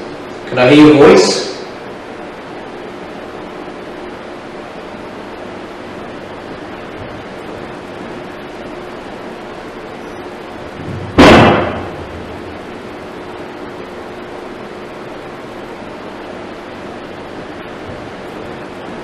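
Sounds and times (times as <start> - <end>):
steady background hiss: 0.0 - 19.0
loud bang: 10.8 - 12.7.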